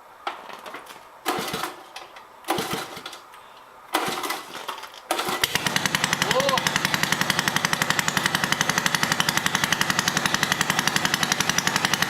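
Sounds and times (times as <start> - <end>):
small engine cranking and starting: 1.3 - 1.9, 2.5 - 3.2, 3.9 - 12.0.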